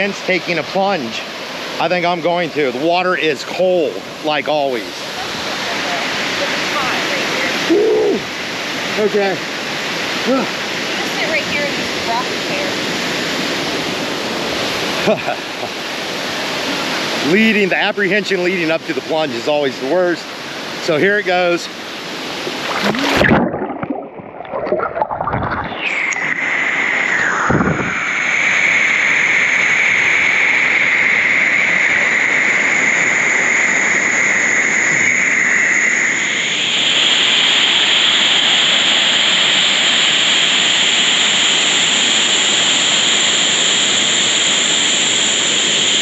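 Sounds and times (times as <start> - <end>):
rushing water: 0.0 - 46.0
person splashing into water: 22.4 - 25.7.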